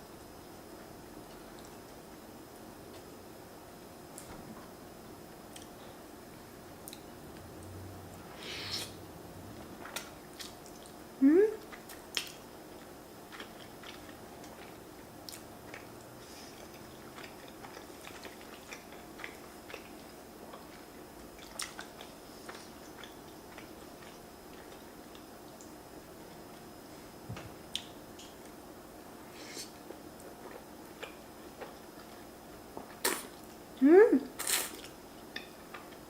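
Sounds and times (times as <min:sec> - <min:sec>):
soft chewing: 0:05.4 - 0:06.0, 0:06.7 - 0:09.0, 0:09.6 - 0:27.1, 0:29.4 - 0:33.8
wet mouth clicks: 0:33.0 - 0:33.4.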